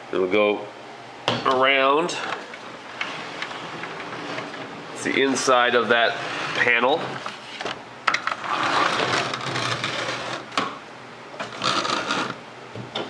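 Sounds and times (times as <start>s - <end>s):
plastic toy parts rubbing and scraping: 5.9s - 10.5s, 11.4s - 12.4s.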